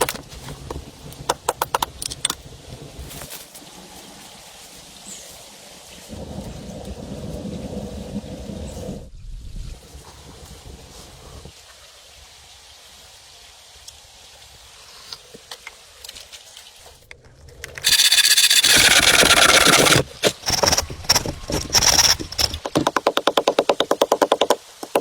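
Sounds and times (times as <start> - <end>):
rasping scrape against wood: 17.8 - 22.9.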